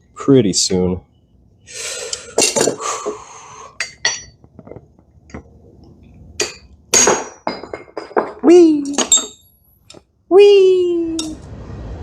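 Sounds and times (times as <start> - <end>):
hammer clinking on metal: 6.4 - 10.0.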